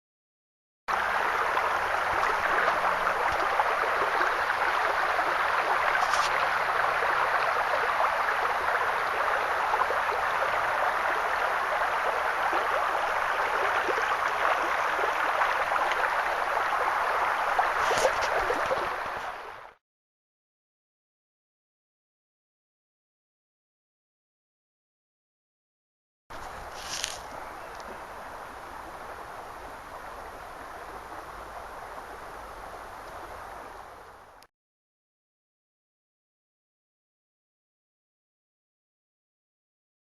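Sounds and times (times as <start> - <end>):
river water flowing over rocks: 0.9 - 19.8, 26.3 - 34.4.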